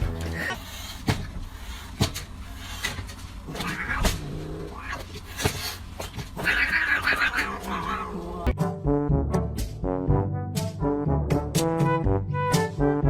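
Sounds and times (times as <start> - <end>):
cat meowing: 3.5 - 5.3, 6.4 - 8.5.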